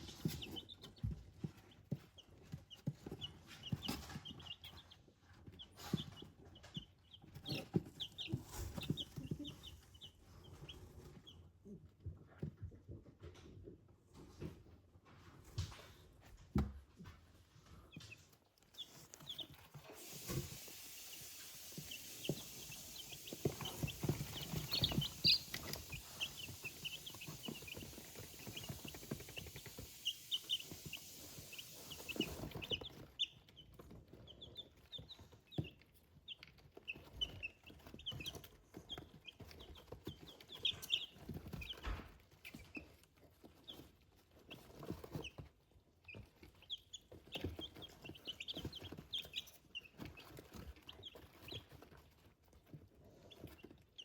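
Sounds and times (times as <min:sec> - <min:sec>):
chicks peeping: 0:00.0 - 0:54.0
soft knocks and rustling: 0:11.9 - 0:53.9.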